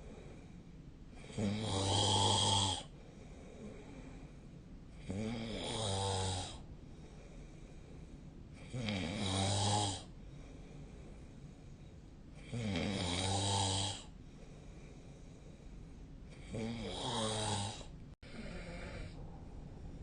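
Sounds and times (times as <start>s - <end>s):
quiet breathing: 0.0s - 20.0s
person snoring: 1.2s - 3.0s, 5.0s - 6.7s, 8.6s - 10.1s, 12.4s - 14.1s, 16.3s - 19.2s.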